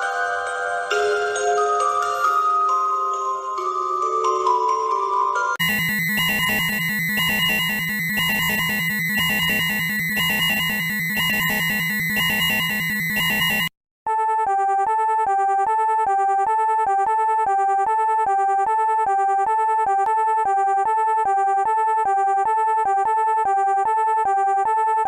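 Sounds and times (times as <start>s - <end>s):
two-tone warning siren: 5.6s - 19.4s.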